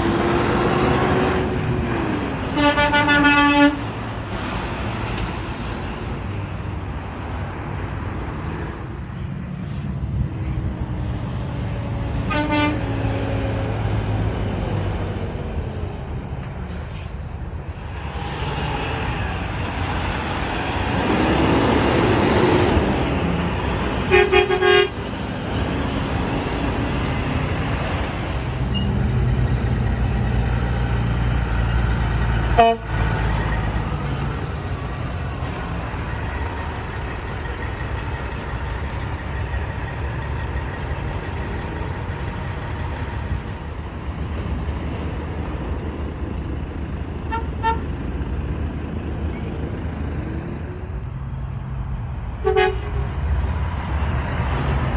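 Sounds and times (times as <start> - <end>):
truck engines rumbling: 0.0 - 54.9
horn blast: 2.5 - 3.9, 12.2 - 13.0, 24.0 - 25.0, 32.5 - 33.0, 47.3 - 47.9, 52.4 - 53.2.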